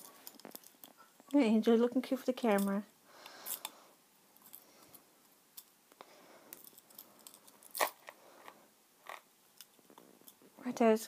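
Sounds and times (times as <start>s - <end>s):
pocket watch clicks and crinkles: 0.1s - 1.0s, 6.5s - 8.1s.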